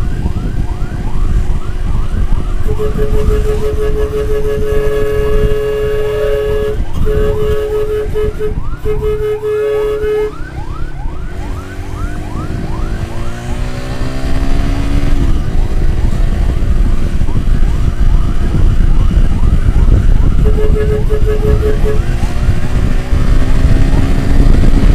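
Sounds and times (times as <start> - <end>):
siren yelping: 0.0 - 13.8, 16.8 - 22.2
engine: 0.0 - 24.9
wind rumble on microphone: 0.0 - 24.9
horn-like tone blasts: 2.6 - 10.8, 20.4 - 22.2.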